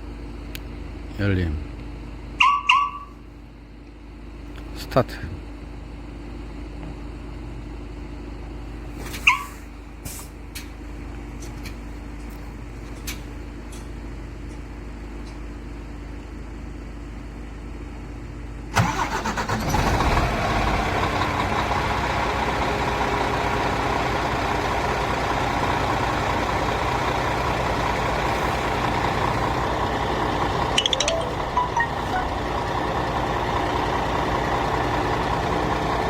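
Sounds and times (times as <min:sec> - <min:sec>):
diesel truck engine starting and idling: 0:18.5 - 0:36.0.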